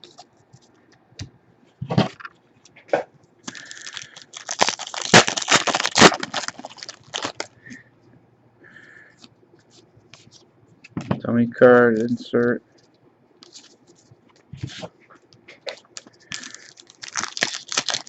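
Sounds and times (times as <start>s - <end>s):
foil wrapper tearing and crinkling: 3.5s - 7.5s, 15.8s - 18.0s.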